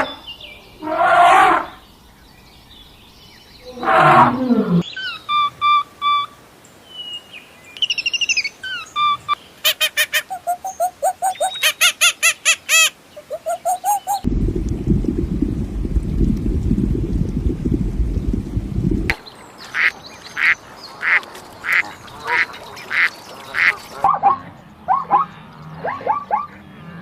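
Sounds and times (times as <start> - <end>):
bird chirping: 1.7 - 14.3
wind on microphone: 13.8 - 19.2.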